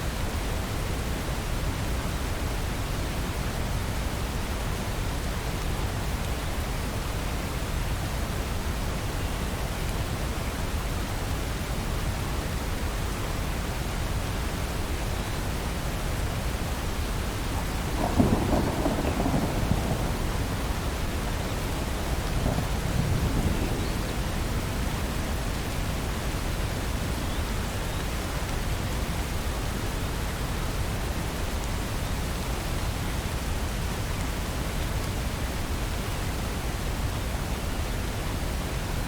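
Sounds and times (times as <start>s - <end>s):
steady rain falling: 0.0s - 39.0s
low rumble of thunder: 16.2s - 27.8s.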